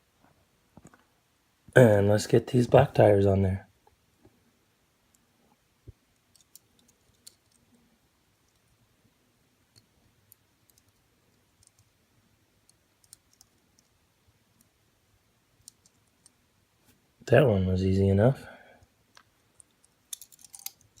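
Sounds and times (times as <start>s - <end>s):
small clicks of toy car wheels: 19.2s - 21.0s.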